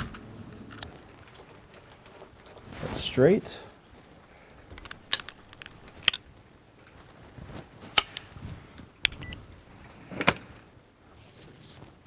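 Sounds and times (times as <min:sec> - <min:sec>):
lock parts clicking into a door: 0:04.7 - 0:06.2.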